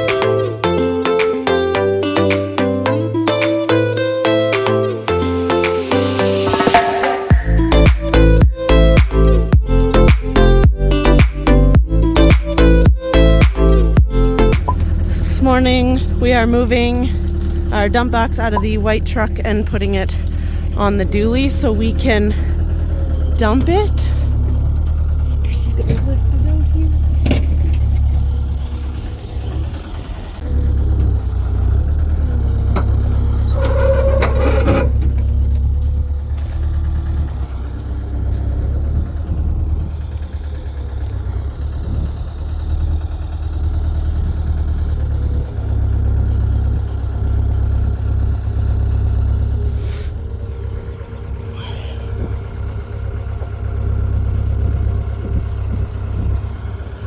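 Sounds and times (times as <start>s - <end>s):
heavy machinery engine rumble: 6.1s - 57.0s.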